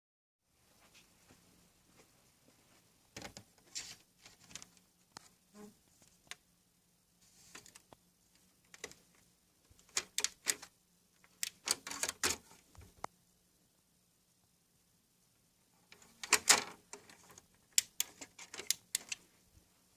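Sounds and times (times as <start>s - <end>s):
faint steady hum: 0.5s - 19.9s
computer parts clicking and rustling: 3.1s - 5.3s, 7.4s - 13.1s, 15.8s - 19.3s.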